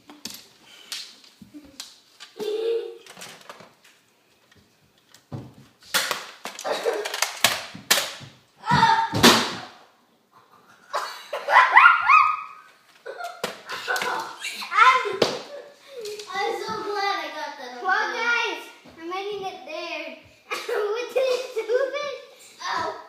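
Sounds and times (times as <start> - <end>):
children giggling and squealing: 10.4 - 17.1, 20.5 - 23.0.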